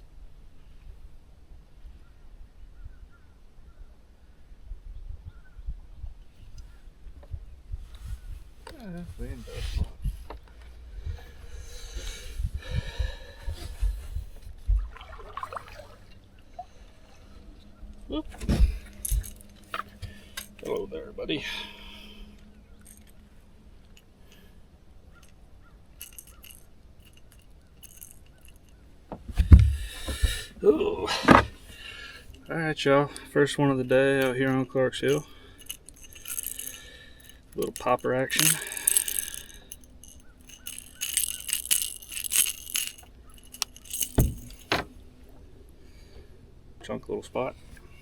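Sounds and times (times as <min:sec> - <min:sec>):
fish splashing in water: 0:14.8 - 0:16.2
fishing hooks clicking and clinking: 0:18.8 - 0:20.9, 0:22.8 - 0:23.2, 0:26.0 - 0:28.8, 0:34.1 - 0:44.9.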